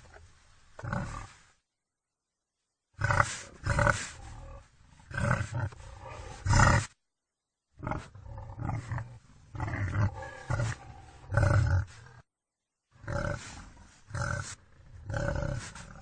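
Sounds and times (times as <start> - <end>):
wild boar grunting: 3.0 - 7.0, 7.8 - 12.2, 13.0 - 16.0.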